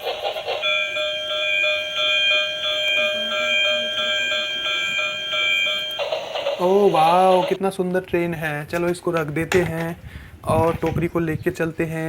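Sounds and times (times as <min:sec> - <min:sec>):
toy train siren-like tone: 0:00.0 - 0:07.6.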